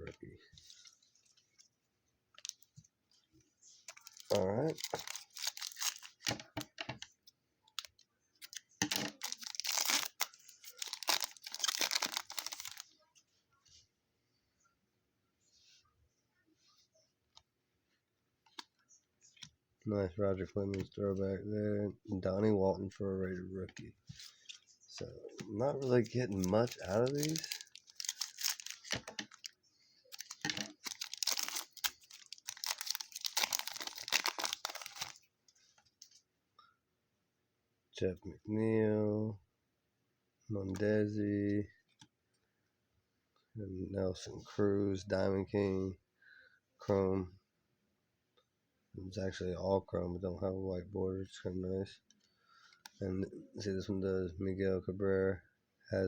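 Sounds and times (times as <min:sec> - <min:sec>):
card pack wrapper tearing: 0:03.9 - 0:06.4, 0:08.4 - 0:12.8, 0:25.8 - 0:29.5, 0:30.1 - 0:35.2.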